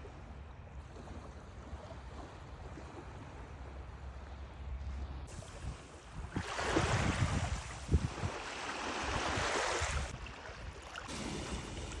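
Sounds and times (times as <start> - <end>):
waves washing onto shore: 5.3 - 12.0
wind buffeting microphone: 5.3 - 12.0.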